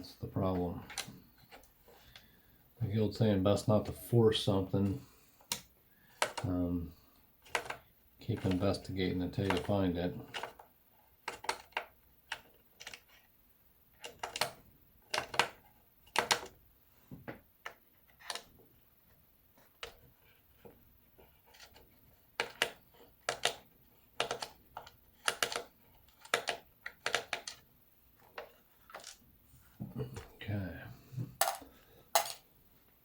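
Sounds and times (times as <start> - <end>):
small tools clicking on plastic case: 5.4 - 6.5, 7.4 - 8.8, 9.4 - 10.6, 11.2 - 13.3, 14.0 - 16.6, 22.4 - 27.6.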